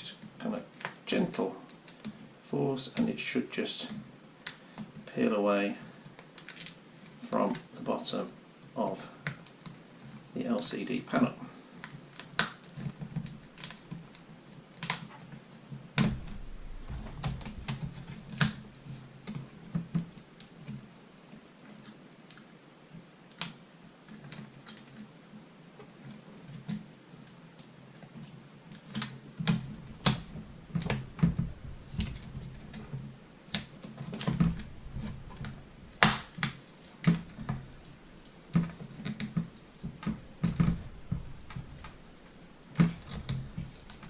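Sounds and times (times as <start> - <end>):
low handling knocks: 16.0 - 18.6, 39.4 - 44.0.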